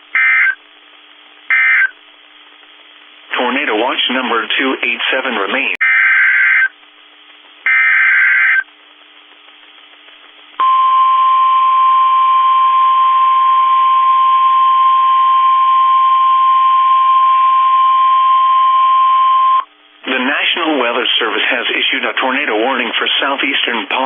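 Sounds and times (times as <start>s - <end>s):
steady loud alarm tone: 0.2s - 0.6s, 1.5s - 2.0s, 5.8s - 6.7s, 7.7s - 8.6s, 10.6s - 19.6s
high warbling digital screech: 5.8s - 6.7s, 7.7s - 8.6s.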